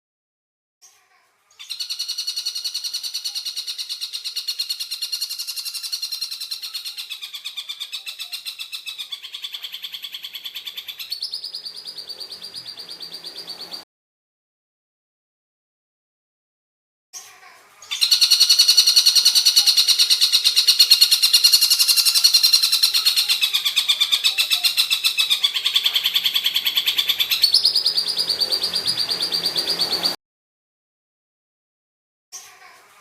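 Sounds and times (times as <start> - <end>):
kingfisher rattling call: 17.9 - 30.2.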